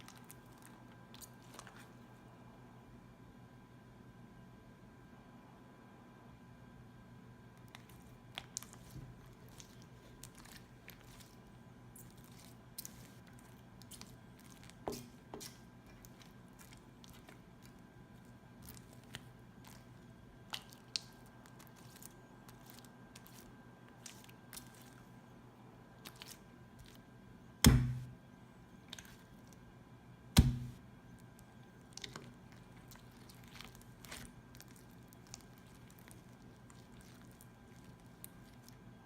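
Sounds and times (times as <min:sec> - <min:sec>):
slime being squished by hand: 0:07.6 - 0:25.1, 0:26.0 - 0:27.0, 0:28.8 - 0:29.6, 0:30.4 - 0:38.9.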